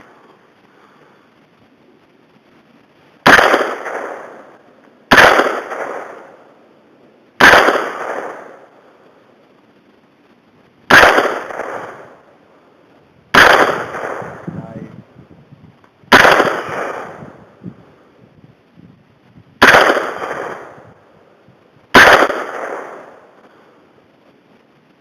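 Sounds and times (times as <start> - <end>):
rifle shots echoing: 3.2 - 6.6, 7.4 - 8.8, 10.9 - 12.3, 13.3 - 14.8, 16.1 - 17.5, 19.6 - 21.0, 21.9 - 23.5.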